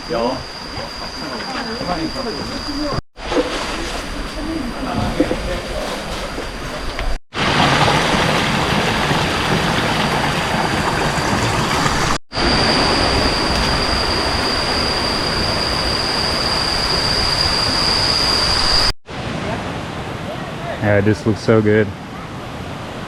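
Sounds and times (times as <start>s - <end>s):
steady high-pitched whine: 0.0s - 3.0s, 12.3s - 18.9s.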